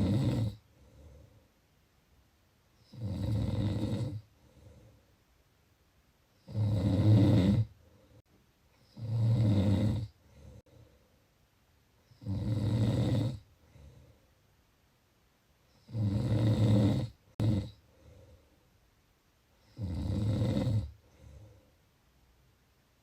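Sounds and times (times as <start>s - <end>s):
loud low buzzing snores: 0.0s - 0.6s, 2.8s - 4.3s, 6.4s - 7.7s, 8.9s - 10.2s, 12.2s - 13.4s, 15.8s - 17.8s, 19.7s - 21.0s
soft breaths: 0.0s - 1.9s, 3.9s - 5.5s, 7.6s - 9.2s, 10.0s - 12.3s, 13.4s - 14.7s, 17.1s - 19.8s, 20.9s - 22.4s.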